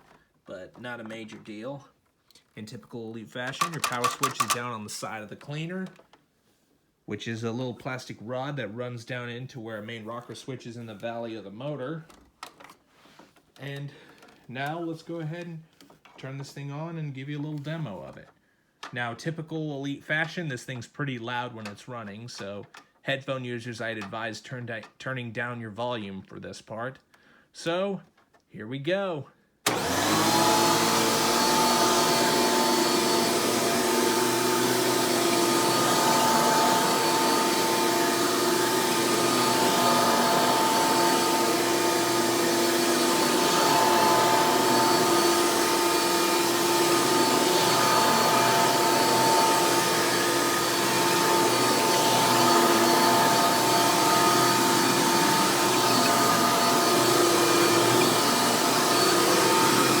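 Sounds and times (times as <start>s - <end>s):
upright vacuum cleaner running: 29.7s - 60.0s.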